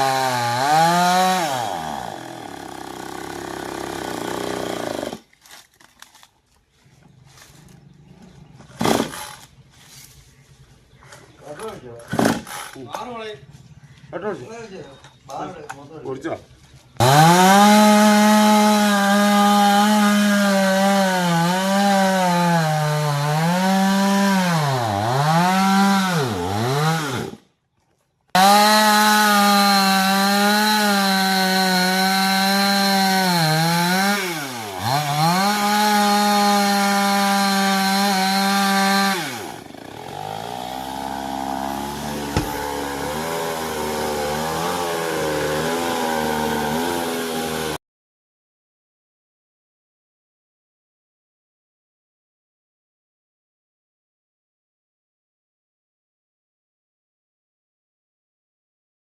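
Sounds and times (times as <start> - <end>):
chainsaw cutting wood: 0.0 - 6.3, 8.7 - 9.5, 12.1 - 12.8, 17.0 - 27.5, 28.4 - 47.8.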